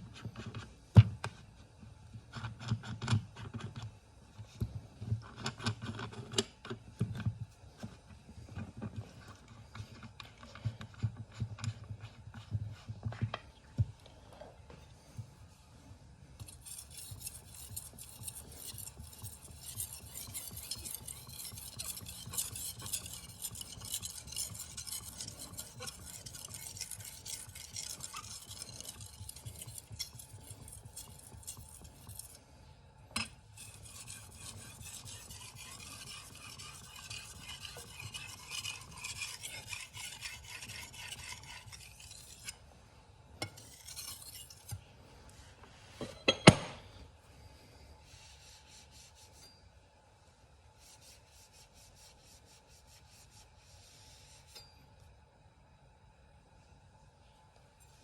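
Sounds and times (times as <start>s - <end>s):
knife scraping on whetstone: 16.4s - 32.4s, 33.2s - 42.6s, 43.4s - 44.8s.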